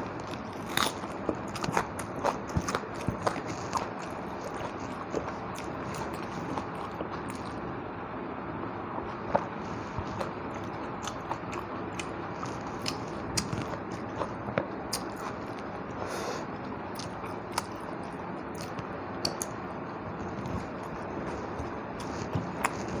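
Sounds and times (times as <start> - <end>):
person chewing food: 0.0 - 7.7, 9.0 - 19.6, 20.2 - 23.0.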